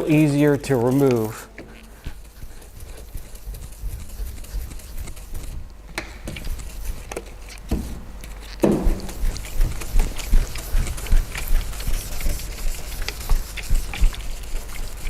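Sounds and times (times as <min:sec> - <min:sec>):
wet sanding strokes: 0:00.0 - 0:15.0
loud scuff: 0:07.7 - 0:09.4.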